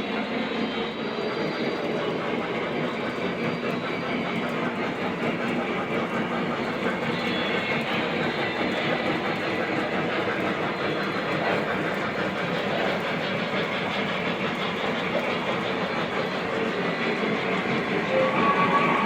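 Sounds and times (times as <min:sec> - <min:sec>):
model train wheels rolling on track: 0:00.0 - 0:19.0
locomotive sound effects playing: 0:17.4 - 0:19.0.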